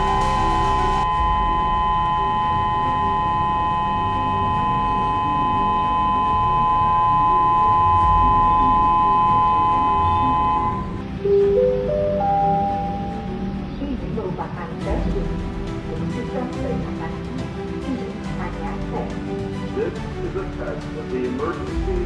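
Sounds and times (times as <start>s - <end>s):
warning siren chord: 0.0s - 13.7s.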